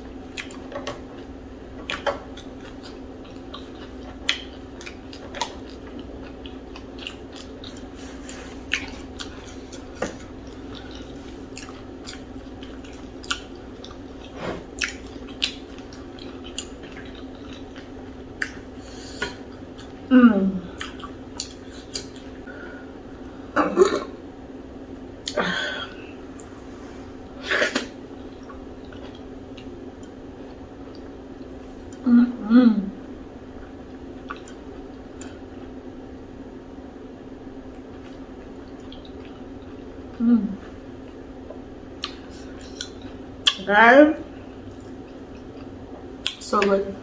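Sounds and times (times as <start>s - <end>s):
steady low hum: 0.0s - 47.0s
chewing and mouth smacks: 0.3s - 20.0s, 20.8s - 22.4s, 27.7s - 32.0s, 33.6s - 35.7s, 37.7s - 40.2s, 41.0s - 43.6s, 44.5s - 46.6s.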